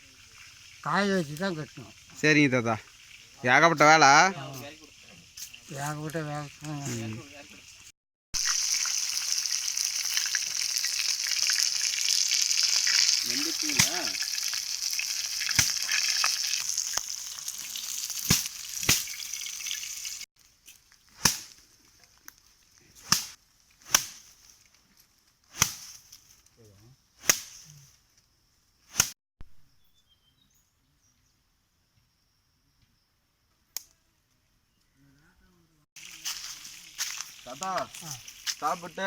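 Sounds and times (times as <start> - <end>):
chicken sizzling in oil: 0.0 - 20.3, 36.0 - 39.0
sharp pops: 13.6 - 14.2, 15.4 - 16.2, 18.2 - 19.2, 21.1 - 21.7, 23.0 - 24.5, 25.5 - 26.1, 27.2 - 27.8, 28.8 - 29.2.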